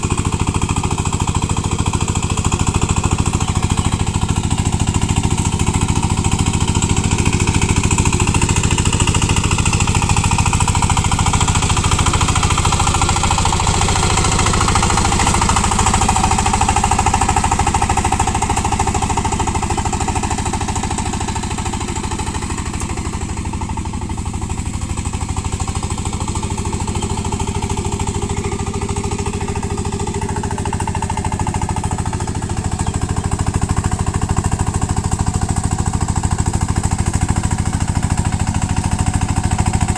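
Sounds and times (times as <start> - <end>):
diesel tiller engine chugging: 0.0 - 39.9
tiller churning through mud: 0.0 - 39.9.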